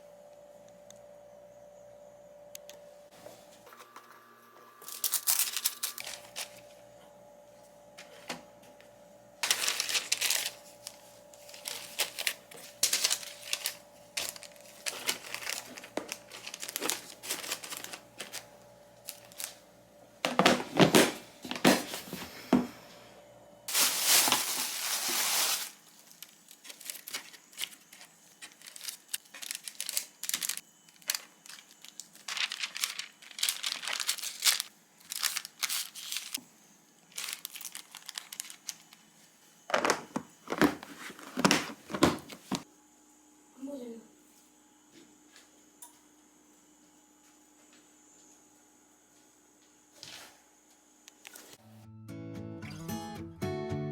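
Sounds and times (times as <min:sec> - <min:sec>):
plastic packaging crinkling: 0:04.8 - 0:06.7, 0:09.4 - 0:19.6, 0:23.7 - 0:36.4, 0:37.1 - 0:39.1, 0:39.7 - 0:42.6.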